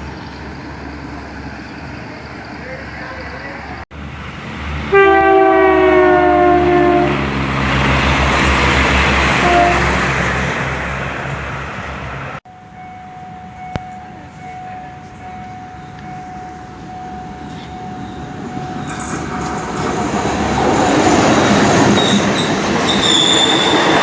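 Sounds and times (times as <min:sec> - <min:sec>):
loud rushing train noise: 0:00.0 - 0:24.0
train running noise: 0:00.0 - 0:24.0
train horn blast: 0:04.8 - 0:07.7, 0:09.1 - 0:10.2.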